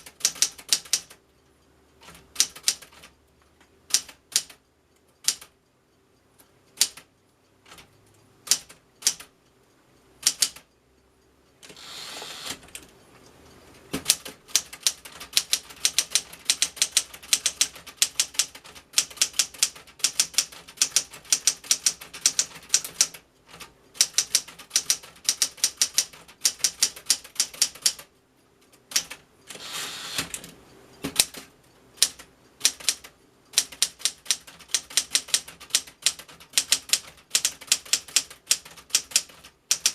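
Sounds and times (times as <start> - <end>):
typewriter keys clacking: 0.0 - 1.2, 2.0 - 3.1, 10.2 - 10.6, 14.0 - 28.1, 31.1 - 39.9.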